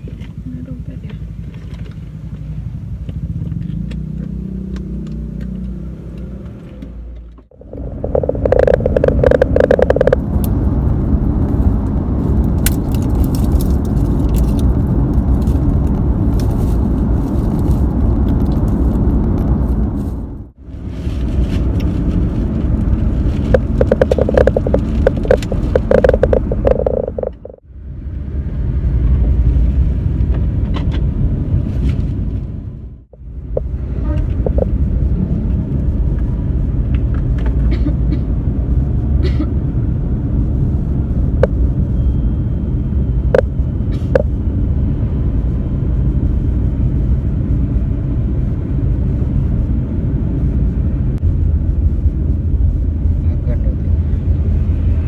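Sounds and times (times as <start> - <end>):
car interior rumble: 0.0 - 55.0
clicks and rustles: 8.0 - 10.6, 12.3 - 20.2, 21.0 - 27.6.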